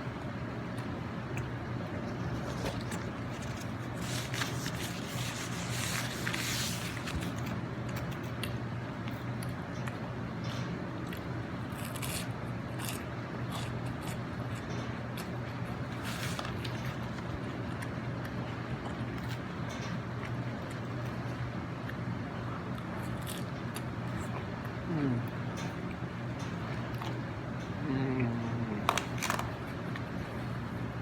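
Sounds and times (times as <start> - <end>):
person chewing: 11.1 - 19.5, 21.8 - 26.0.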